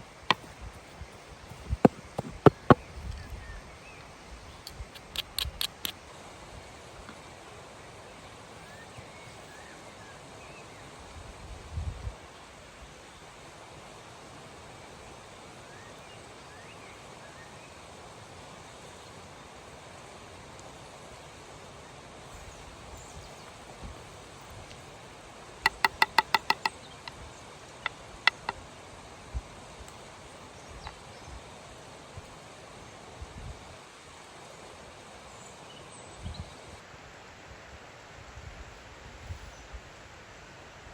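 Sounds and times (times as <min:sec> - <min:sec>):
outdoor background noise: 0:00.0 - 0:40.9
sharp ringing clicks: 0:25.7 - 0:27.1, 0:28.3 - 0:28.6.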